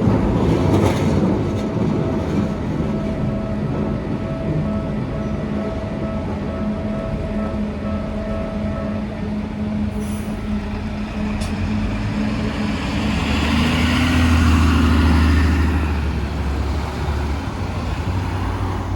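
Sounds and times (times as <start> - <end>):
traffic noise: 0.0 - 18.9
heavy vehicle passing: 10.3 - 18.9.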